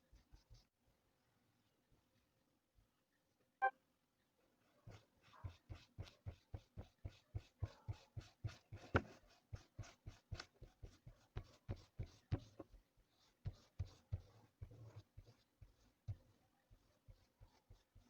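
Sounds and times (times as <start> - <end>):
chalk scratching: 4.8 - 18.0.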